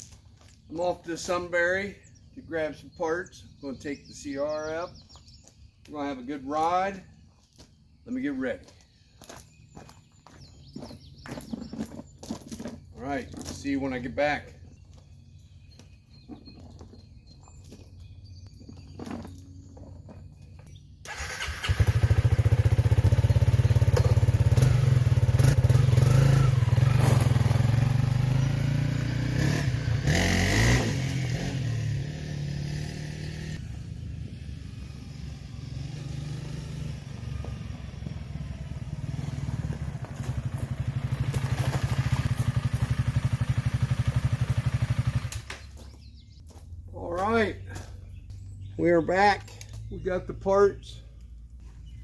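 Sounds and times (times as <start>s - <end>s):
motorcycle engine running: 21.1s - 32.7s, 33.3s - 46.0s.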